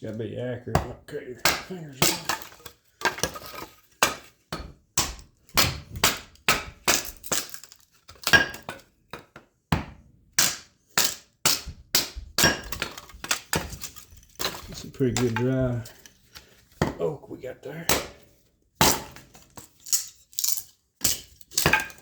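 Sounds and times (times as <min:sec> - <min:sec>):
axe chopping wood: 0:00.8 - 0:07.6, 0:08.2 - 0:15.9, 0:17.8 - 0:18.2, 0:18.8 - 0:19.4, 0:21.0 - 0:22.0.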